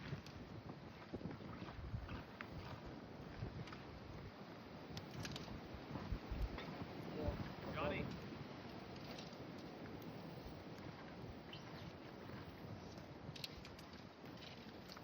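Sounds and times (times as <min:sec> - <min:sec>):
faint steady wind: 0:00.0 - 0:15.0
light clicks and rustles: 0:04.9 - 0:05.6, 0:07.9 - 0:15.0.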